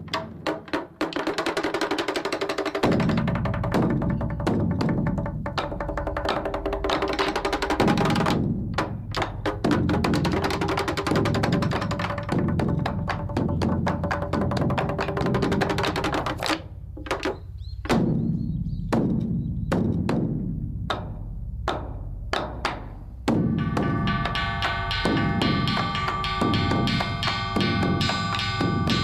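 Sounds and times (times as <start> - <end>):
wooden fish strikes: 7.8 - 18.3.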